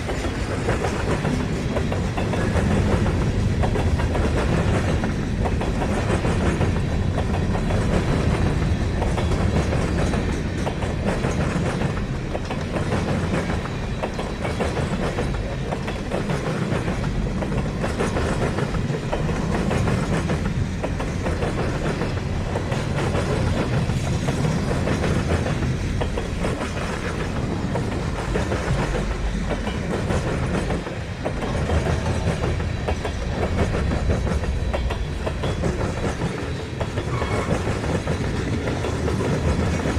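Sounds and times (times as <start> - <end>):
freight train wheels rumbling on rails: 0.0 - 39.9.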